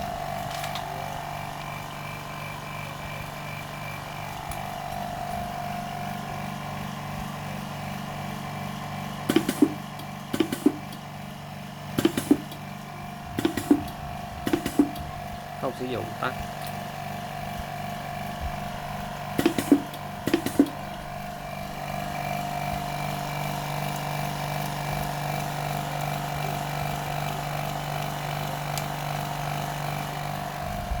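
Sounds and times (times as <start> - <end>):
machine hum: 0.0 - 31.0
sharp clicks and knocks: 9.3 - 11.0, 12.0 - 12.6, 13.4 - 15.1, 19.3 - 21.0.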